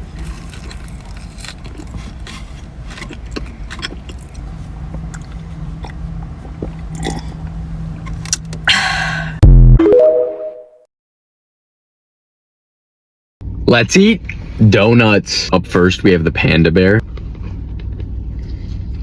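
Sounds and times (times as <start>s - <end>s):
chewing and biting food: 0.0s - 7.4s
steady low hum: 0.0s - 9.8s
brief ringing tone: 9.8s - 10.8s.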